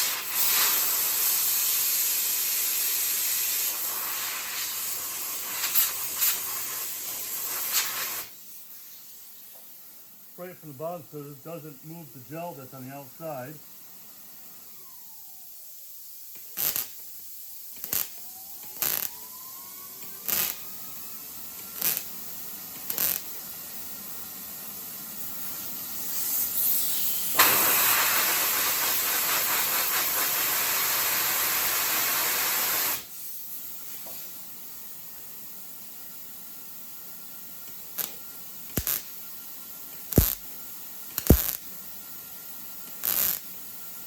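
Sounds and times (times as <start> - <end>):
short air bursts: 0.0 - 9.4, 14.7 - 19.4, 20.0 - 24.0, 24.7 - 34.4, 37.7 - 43.8
compressed air hissing: 0.0 - 9.5, 21.6 - 23.7, 24.7 - 34.4, 39.9 - 40.5, 41.1 - 42.0, 42.9 - 43.5.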